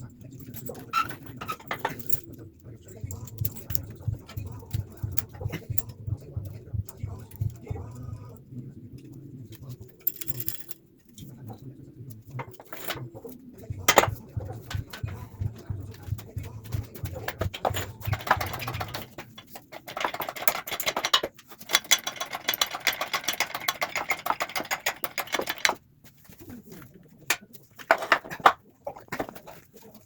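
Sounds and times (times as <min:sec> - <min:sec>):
hand tools clicking and rattling: 0:00.2 - 0:06.1, 0:10.0 - 0:10.8, 0:13.9 - 0:25.8, 0:27.7 - 0:29.6.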